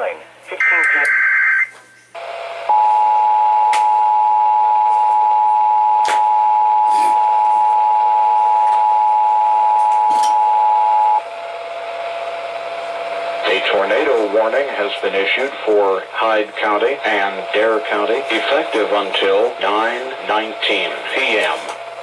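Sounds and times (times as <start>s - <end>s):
two-tone alert signal: 2.7s - 11.2s.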